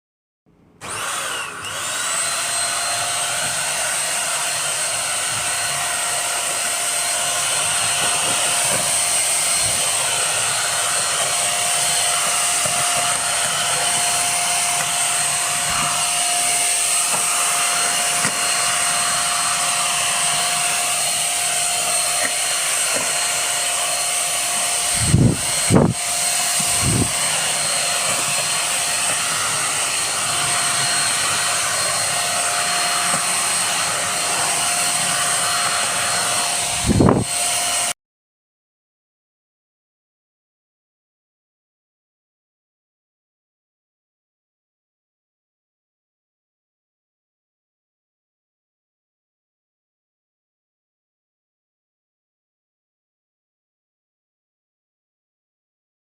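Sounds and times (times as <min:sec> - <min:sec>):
handheld vacuum cleaner whine: 0:00.8 - 0:38.0.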